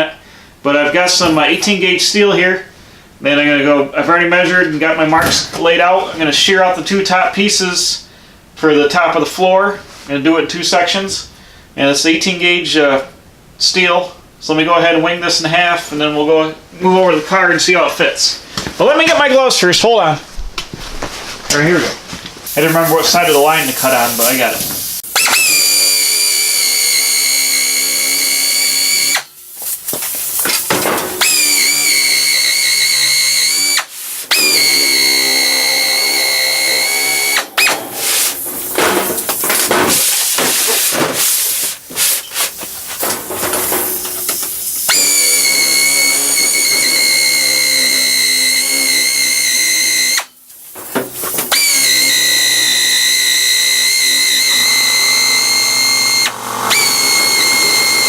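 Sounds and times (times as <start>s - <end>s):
electric metal shear whining: 25.1s - 29.3s, 30.6s - 40.2s, 43.0s - 58.0s.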